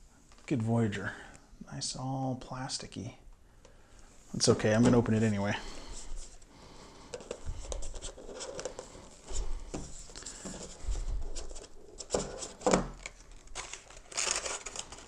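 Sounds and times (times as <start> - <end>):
cardboard and packaging scraping: 7.2 - 15.0.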